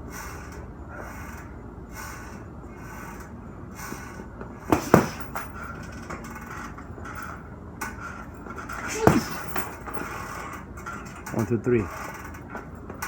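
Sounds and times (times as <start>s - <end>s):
punches thudding into punching bag: 4.6s - 5.7s, 8.7s - 10.2s.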